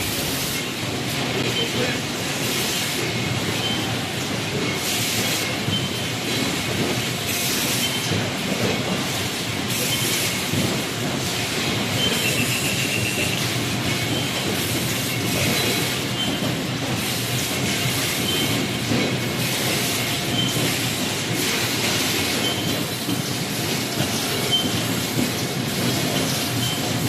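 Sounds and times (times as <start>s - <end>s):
machines clattering: 0.0s - 27.0s.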